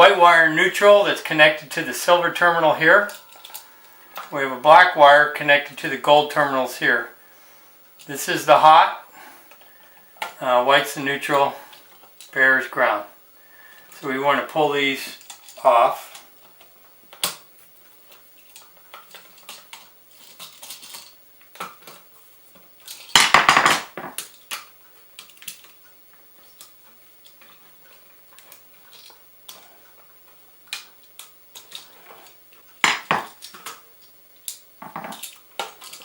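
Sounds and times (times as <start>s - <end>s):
metallic clicks of wires handled: 2.8s - 4.4s, 15.2s - 17.4s, 18.1s - 22.0s, 24.2s - 25.8s, 26.4s - 30.1s, 30.7s - 36.0s.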